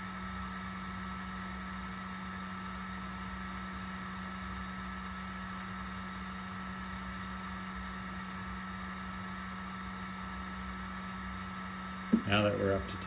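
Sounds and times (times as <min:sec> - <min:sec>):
fan hiss: 0:00.0 - 0:13.0
printer low hum: 0:12.0 - 0:13.0
faint high whine: 0:12.1 - 0:13.0.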